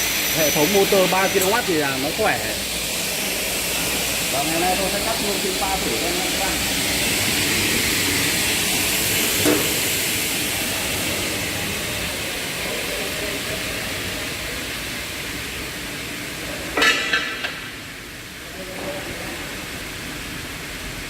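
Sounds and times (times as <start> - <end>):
cutting saw whirring: 0.0 - 9.8.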